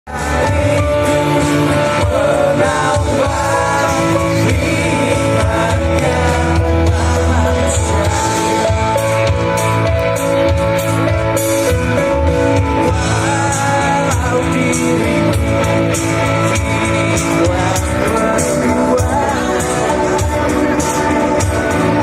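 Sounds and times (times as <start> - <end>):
pop-rock band with singing: 0.1 - 22.0.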